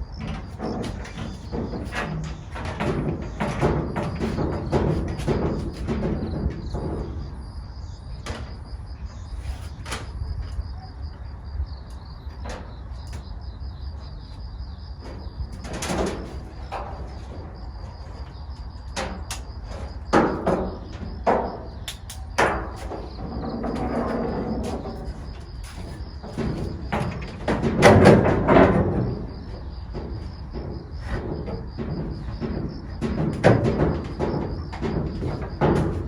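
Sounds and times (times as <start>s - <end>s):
knocks and clatter of hand work: 0.0s - 14.4s, 15.0s - 36.0s.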